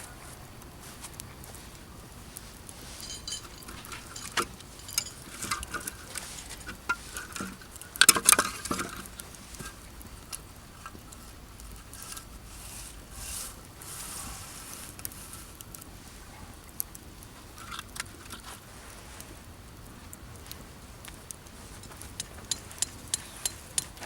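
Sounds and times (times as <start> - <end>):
campfire crackling: 0.0 - 24.0
camp gear being handled: 0.8 - 9.9.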